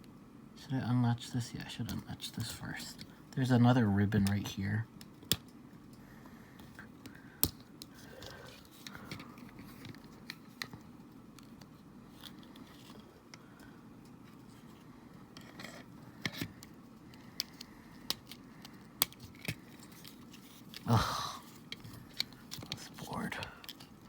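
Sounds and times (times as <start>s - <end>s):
small plastic clicks and scrapes: 15.3s - 20.9s.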